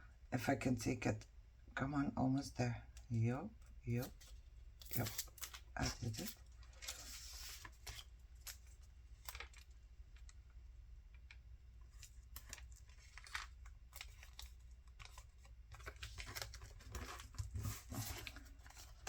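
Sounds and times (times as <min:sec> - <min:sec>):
paper rustling and crinkling: 0:04.0 - 0:10.4, 0:11.2 - 0:19.0.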